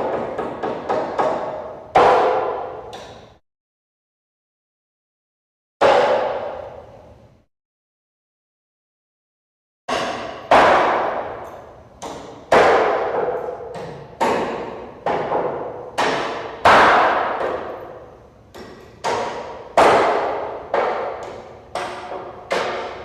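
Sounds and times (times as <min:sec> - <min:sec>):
echoing hammer blows: 0:00.0 - 0:03.4, 0:05.8 - 0:07.5, 0:09.9 - 0:23.0.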